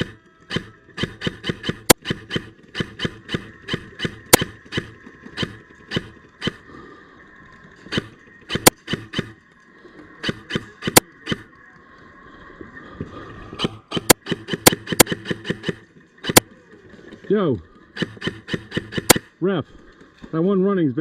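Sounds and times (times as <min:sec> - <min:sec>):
airsoft guns shooting: 0:00.0 - 0:06.9, 0:07.8 - 0:09.4, 0:10.2 - 0:11.6, 0:13.6 - 0:16.6, 0:17.9 - 0:19.4.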